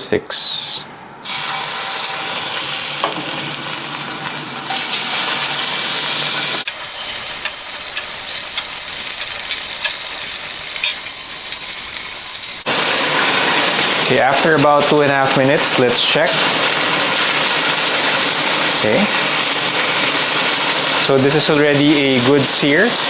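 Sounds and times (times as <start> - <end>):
meat sizzling in hot oil: 1.2 - 23.0.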